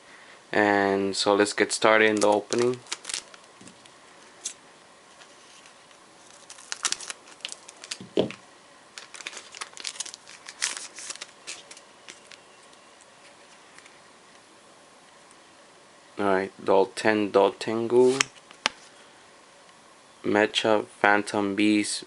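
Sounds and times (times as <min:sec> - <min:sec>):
foil wrapper crinkling and tearing: 0:02.1 - 0:04.6, 0:05.2 - 0:08.4, 0:09.0 - 0:13.1.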